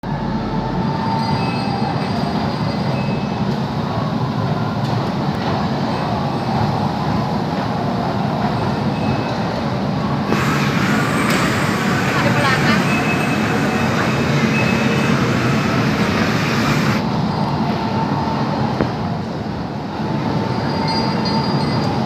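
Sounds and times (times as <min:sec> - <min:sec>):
airliner cabin engine roar: 0:00.0 - 0:22.0
hiss: 0:10.3 - 0:17.0.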